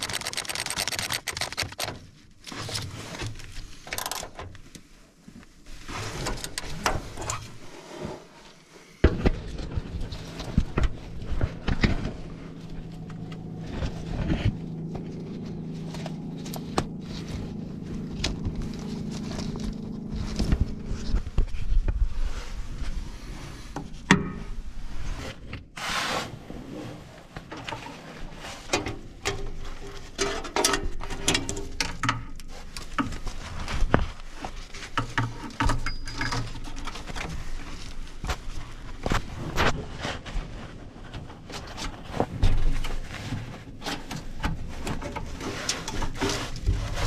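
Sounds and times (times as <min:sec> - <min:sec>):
hands and tools clicking and knocking: 0:00.0 - 0:02.0
low steady hum: 0:05.1 - 0:25.7.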